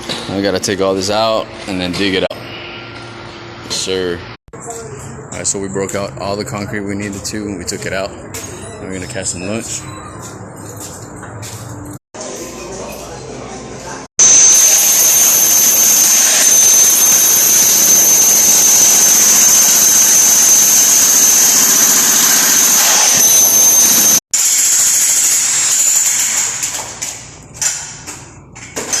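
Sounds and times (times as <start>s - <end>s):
high-pitched machine whine: 2.3s - 4.4s, 14.2s - 24.7s.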